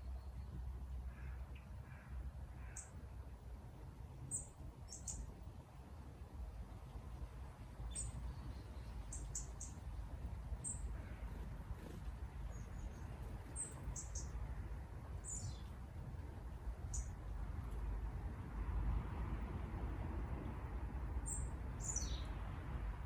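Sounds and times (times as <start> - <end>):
small birds chirping: 4.2 - 5.4, 7.8 - 14.5, 15.1 - 17.3, 21.2 - 22.4.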